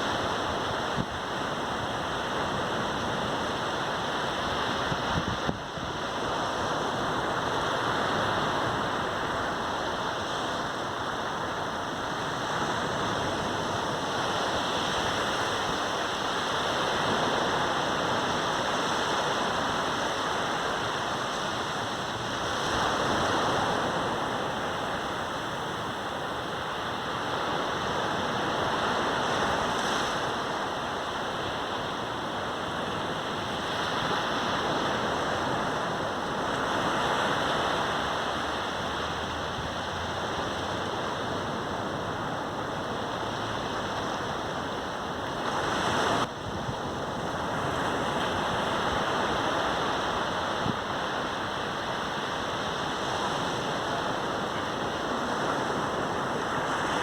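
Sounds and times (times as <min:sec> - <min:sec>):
waves breaking on beach: 0:00.0 - 0:57.0.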